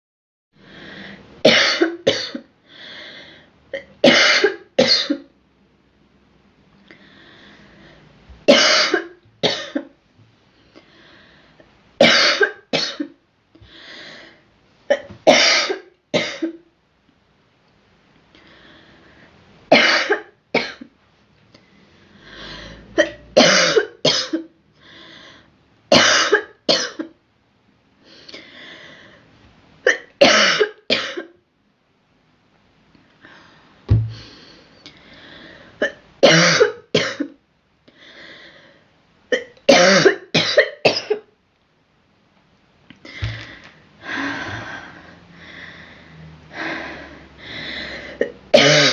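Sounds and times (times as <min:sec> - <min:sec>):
girl coughing harshly: 0:01.4 - 0:02.5, 0:03.8 - 0:05.2, 0:08.5 - 0:09.9, 0:12.0 - 0:13.1, 0:14.9 - 0:16.6, 0:19.7 - 0:20.8, 0:23.0 - 0:24.5, 0:25.9 - 0:27.2, 0:29.9 - 0:31.3, 0:35.8 - 0:37.4, 0:39.4 - 0:41.3, 0:48.2 - 0:48.9.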